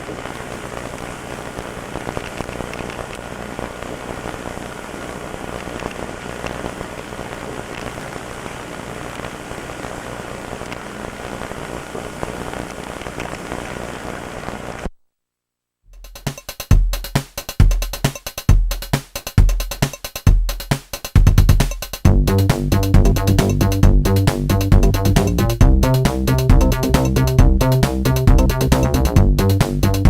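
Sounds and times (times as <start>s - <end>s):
dense crackling hiss: 0.0s - 15.0s
electronic music with drum beat: 15.9s - 30.0s.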